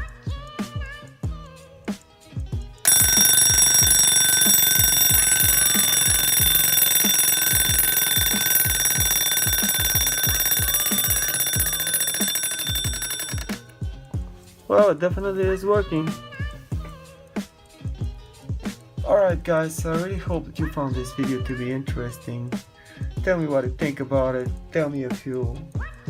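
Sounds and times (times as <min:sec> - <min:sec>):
mechanical alarm clock ringing: 0:02.9 - 0:13.8.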